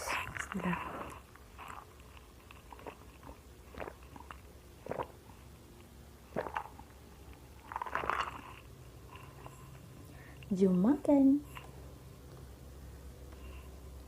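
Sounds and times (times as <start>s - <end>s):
soft mouth sounds: 0.0s - 5.5s, 6.2s - 7.0s
person chewing food: 0.1s - 10.0s.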